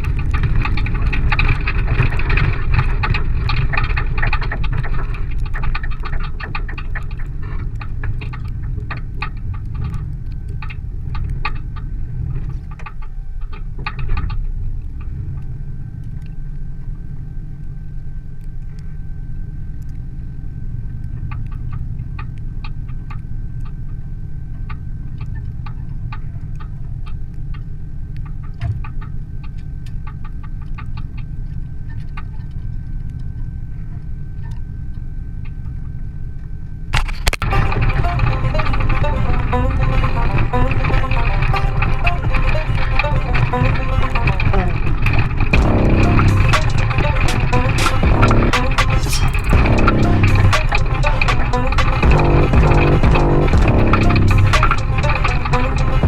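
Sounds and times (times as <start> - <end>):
rattles and clanks: 0.0 - 14.4
vehicle engine running: 37.0 - 56.0.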